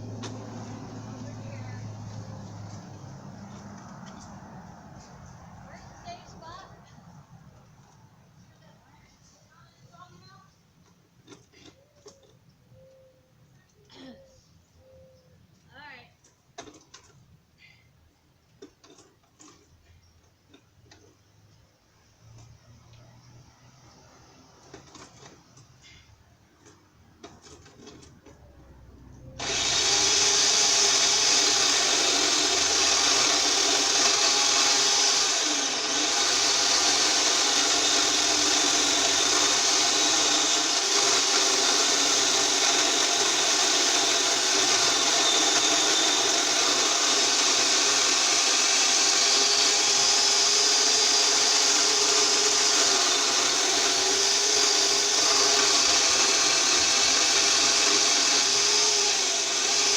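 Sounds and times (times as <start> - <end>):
power saw cutting wood: 0.0 - 4.4, 23.2 - 25.4, 29.4 - 59.9.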